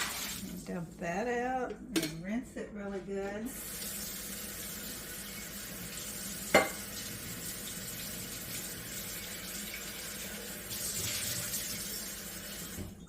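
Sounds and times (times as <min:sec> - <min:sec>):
tap water running in sink: 0:00.0 - 0:00.7, 0:03.5 - 0:13.0
carafe clinking against sink: 0:06.5 - 0:06.9.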